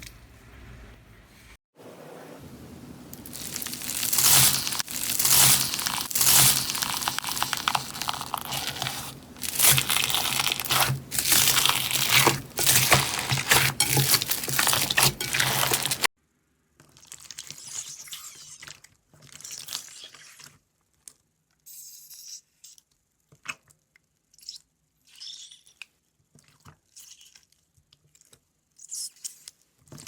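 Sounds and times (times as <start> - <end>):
crunchy slime squeezed by hand: 3.2 - 16.0.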